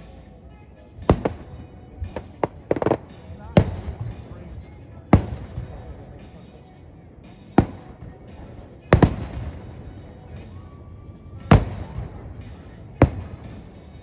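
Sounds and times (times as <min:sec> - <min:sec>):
firework bursts with rumbling echo: 0:01.0 - 0:06.4, 0:07.4 - 0:14.0.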